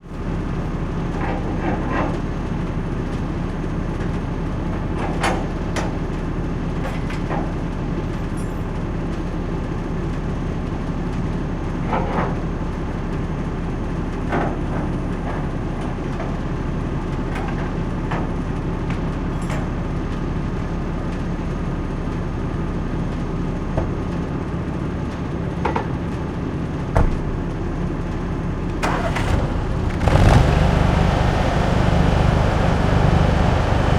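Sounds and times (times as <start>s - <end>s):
truck engine rumbling: 28.6s - 33.9s.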